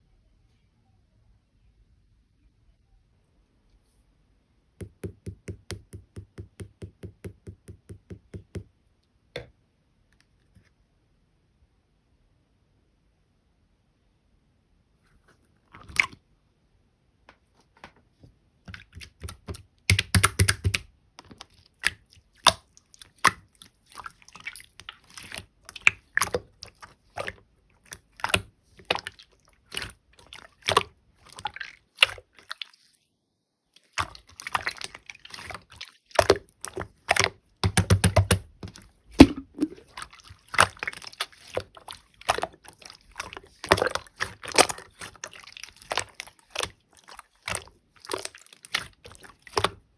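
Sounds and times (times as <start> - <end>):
slime squished by hand: 18.7 - 32.7, 33.8 - 49.8.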